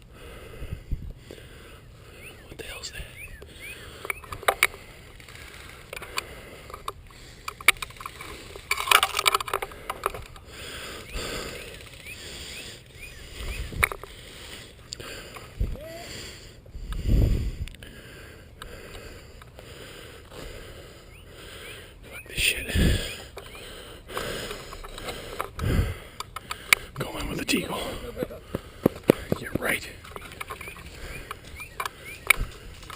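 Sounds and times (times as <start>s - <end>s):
rustling movement: 3.9s - 15.6s, 22.6s - 32.9s.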